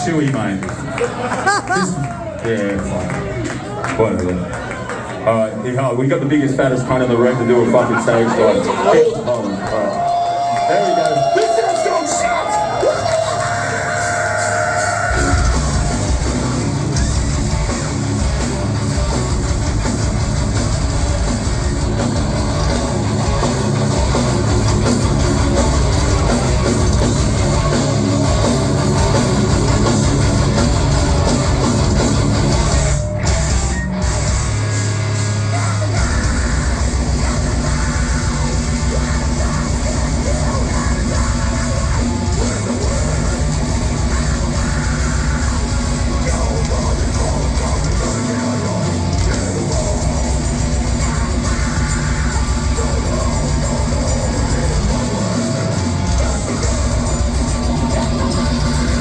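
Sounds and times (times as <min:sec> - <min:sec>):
heavy metal band playing: 0:06.5 - 0:59.0
yelled vocals: 0:06.6 - 0:59.0.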